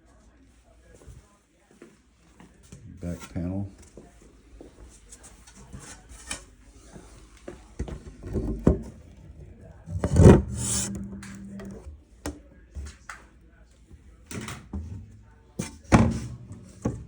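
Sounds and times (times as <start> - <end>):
wood rubbing and scraping: 7.8 - 11.9.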